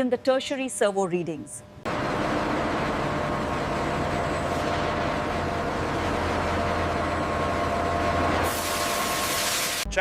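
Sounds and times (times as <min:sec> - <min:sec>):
low machinery hum: 0:00.0 - 0:10.0
machinery hiss: 0:08.4 - 0:09.9.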